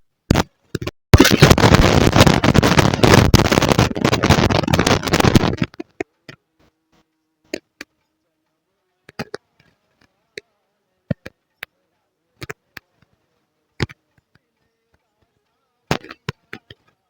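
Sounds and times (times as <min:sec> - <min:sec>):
scattered clicks: 0:00.3 - 0:06.4
loud crackling rustling: 0:01.2 - 0:05.8.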